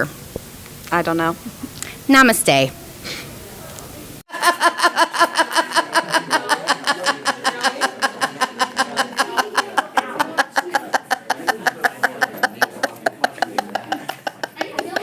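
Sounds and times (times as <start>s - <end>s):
fast even laughter: 4.3s - 15.0s.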